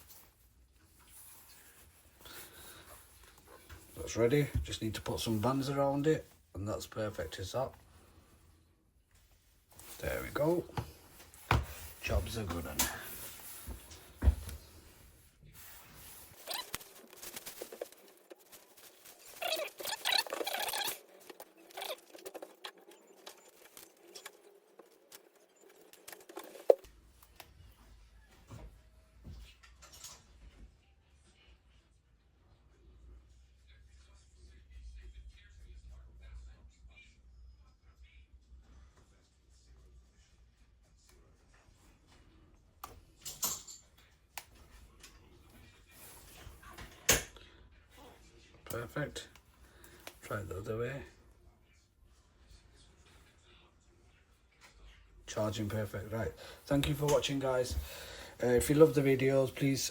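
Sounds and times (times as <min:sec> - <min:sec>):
rustling scrape: 0:11.1 - 0:24.4.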